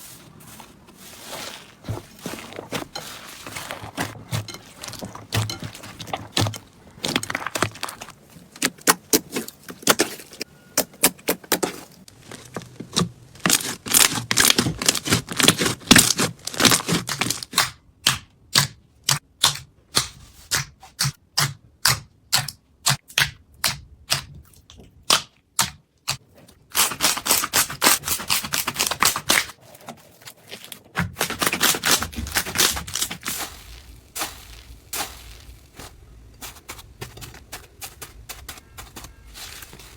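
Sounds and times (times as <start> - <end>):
slime crackling and popping: 31.0 - 36.9.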